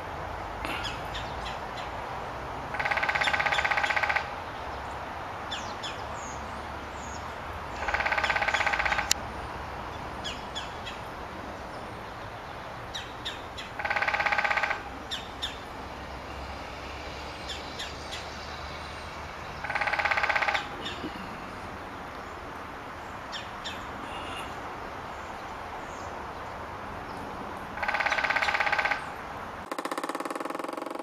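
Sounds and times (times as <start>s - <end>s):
outdoor background noise: 0.0s - 31.0s
woodpecker drumming: 2.7s - 4.3s, 7.7s - 9.2s, 12.9s - 21.3s, 27.8s - 31.0s.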